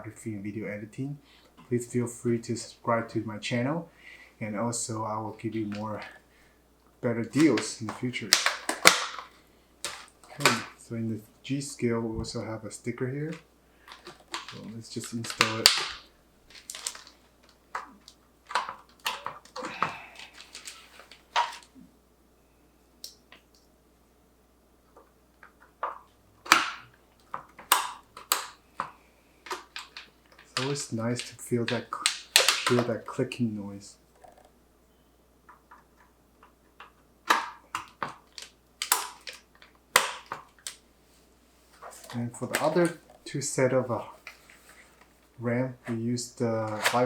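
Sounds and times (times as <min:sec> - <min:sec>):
plastic clicks and crinkles: 0:07.3 - 0:10.8, 0:13.2 - 0:21.9, 0:24.9 - 0:33.2, 0:35.4 - 0:40.9, 0:41.7 - 0:46.0, 0:46.6 - 0:47.0.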